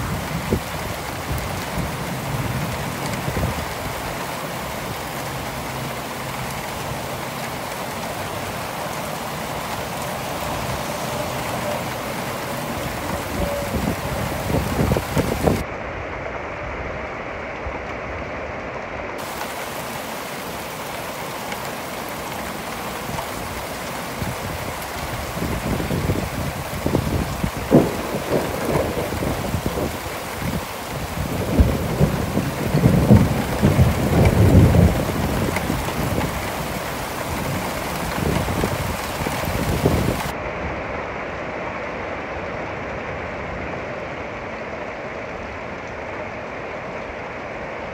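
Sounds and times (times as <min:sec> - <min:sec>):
rain hiss: 0:00.0 - 0:47.9
rolling thunder: 0:12.7 - 0:15.6, 0:25.2 - 0:36.4.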